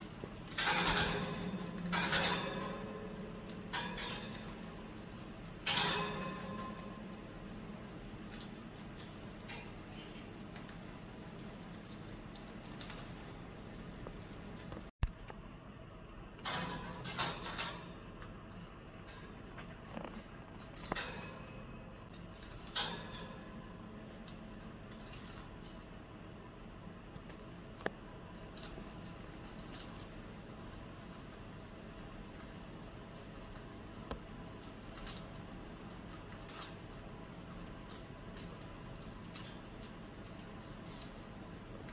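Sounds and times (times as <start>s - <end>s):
metal toy clinking: 0.3s - 7.3s, 37.5s - 41.9s.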